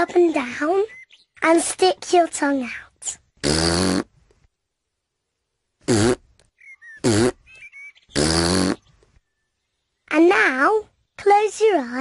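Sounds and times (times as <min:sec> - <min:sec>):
buzzy raspberry blurts: 0:02.9 - 0:04.3, 0:05.8 - 0:06.4, 0:07.0 - 0:09.0.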